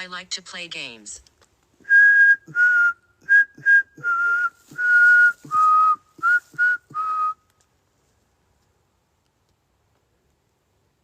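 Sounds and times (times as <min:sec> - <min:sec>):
person whistling a tune: 0:01.8 - 0:07.4.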